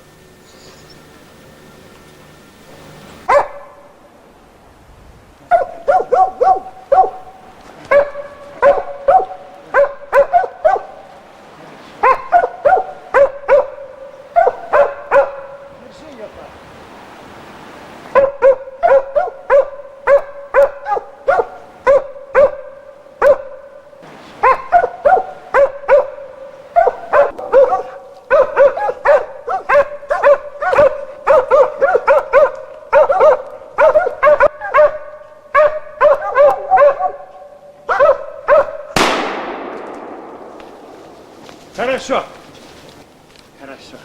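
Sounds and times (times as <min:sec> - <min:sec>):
dogs barking: 0:03.2 - 0:04.1, 0:05.4 - 0:16.0, 0:18.1 - 0:39.6
loud bang with echo: 0:39.0 - 0:41.4.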